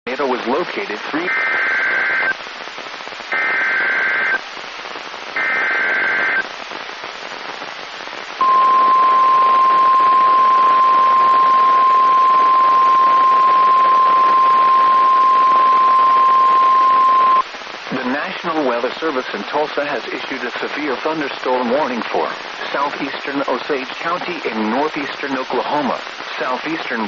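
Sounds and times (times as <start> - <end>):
radio static hiss: 0.1 - 27.0
steady alarm tone: 8.4 - 17.4
warbling data tone bursts: 8.4 - 17.4.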